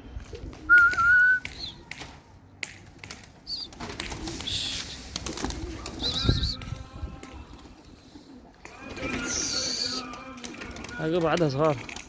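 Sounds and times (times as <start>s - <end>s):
pigeons tapping and clicking: 0.2s - 7.6s, 8.6s - 12.0s
steady whistle: 0.7s - 1.8s
pigeons cooing: 4.4s - 11.2s.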